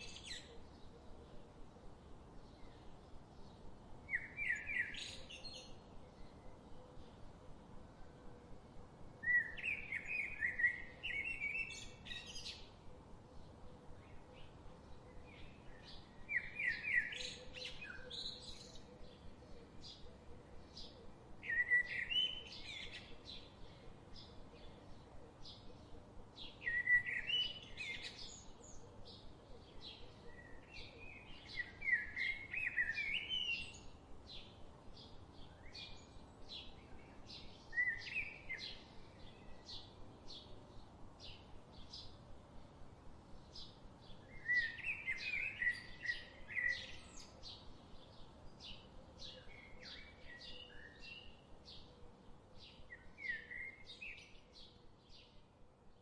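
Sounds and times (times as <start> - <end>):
bird singing warbled phrases: 2.4 - 7.4, 9.2 - 42.6, 43.4 - 56.0
faint steady hum: 17.0 - 56.0.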